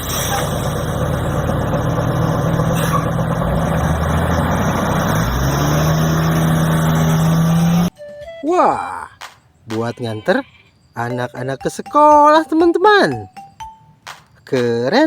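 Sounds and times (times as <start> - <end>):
motor vehicle engine revving: 0.0 - 7.9.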